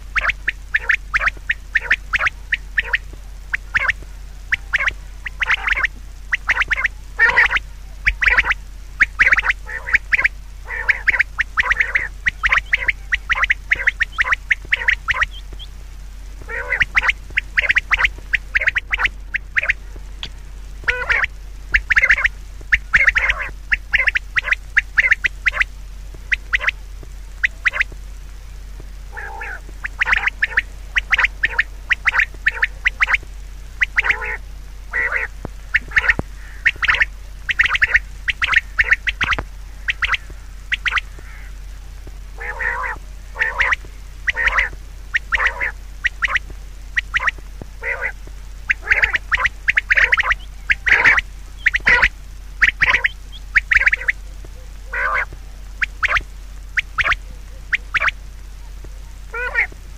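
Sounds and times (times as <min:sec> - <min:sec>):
animal calling: 0:00.0 - 0:15.7, 0:16.4 - 0:26.8, 0:27.4 - 0:28.0, 0:29.1 - 0:59.8.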